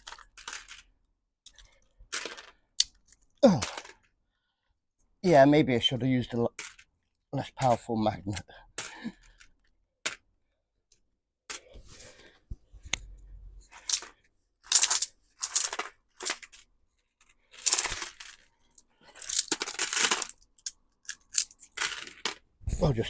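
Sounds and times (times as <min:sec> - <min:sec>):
coins clinking and clattering: 0:00.0 - 0:00.9, 0:01.5 - 0:04.0, 0:13.7 - 0:22.4.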